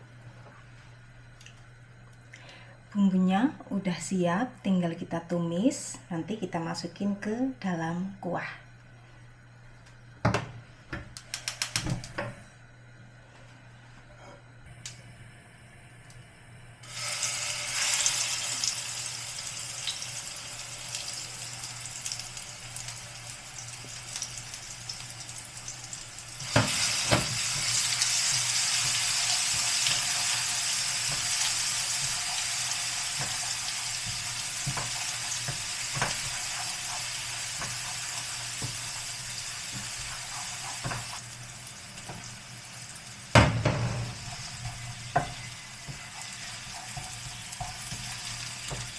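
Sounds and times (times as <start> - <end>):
spice paste sizzling in hot oil: 16.8 - 48.9.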